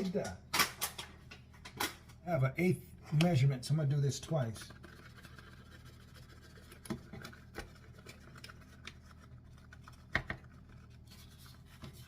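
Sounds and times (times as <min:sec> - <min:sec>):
measuring cup tapping and scraping: 0:04.5 - 0:09.0.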